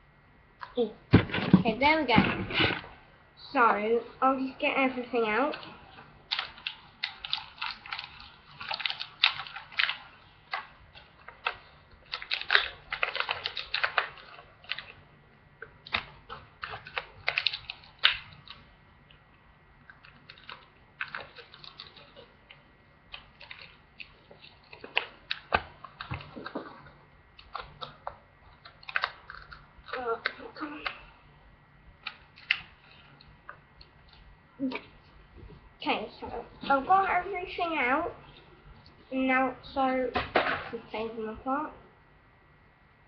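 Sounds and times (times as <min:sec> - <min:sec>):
packaging rustling: 0:05.6 - 0:14.9, 0:15.8 - 0:18.6, 0:19.9 - 0:22.3.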